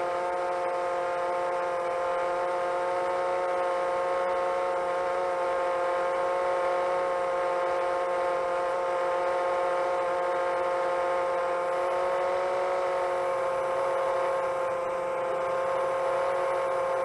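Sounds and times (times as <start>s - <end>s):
drone motors whining: 11.6s - 17.0s.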